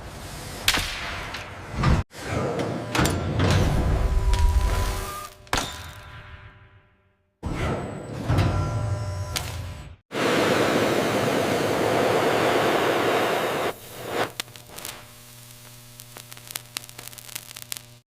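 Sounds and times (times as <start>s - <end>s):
loud steady rushing noise: 10.2s - 13.8s.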